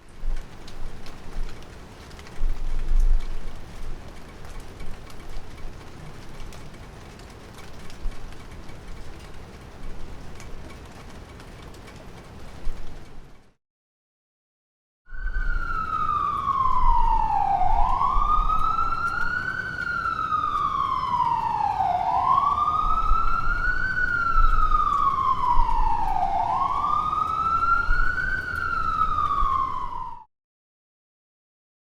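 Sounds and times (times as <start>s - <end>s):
ambulance siren wailing: 15.1s - 30.3s.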